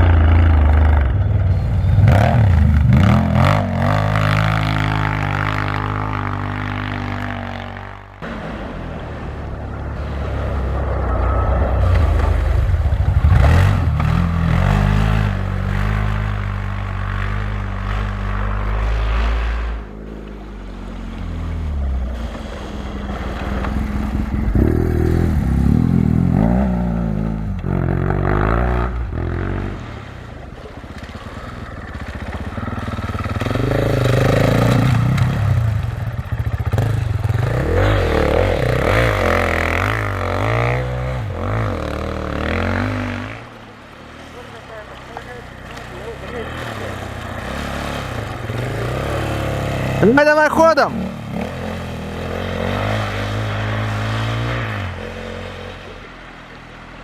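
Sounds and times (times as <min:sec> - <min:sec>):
deep steady engine note: 0:00.0 - 0:06.9
engines revving as vehicles pass: 0:00.0 - 0:57.0.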